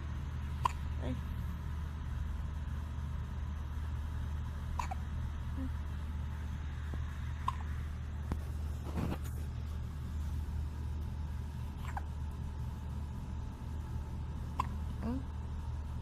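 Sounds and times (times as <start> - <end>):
steady low hum: 0.0 - 16.0
baby hiccuping: 0.6 - 0.9, 4.8 - 5.0, 7.4 - 7.7, 14.5 - 14.9.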